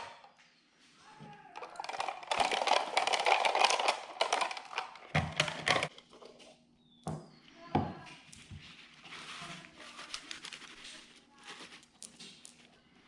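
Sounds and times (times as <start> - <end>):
small hard objects clattering: 1.4 - 6.5.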